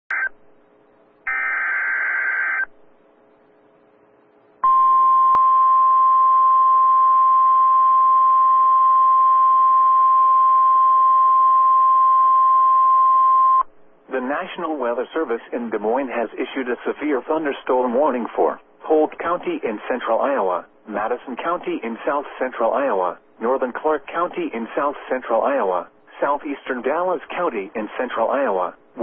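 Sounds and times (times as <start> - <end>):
buzzy digital data bursts: 1.3 - 2.7
steady warning alarm tone: 1.3 - 2.7
faint radio hiss: 13.7 - 29.0.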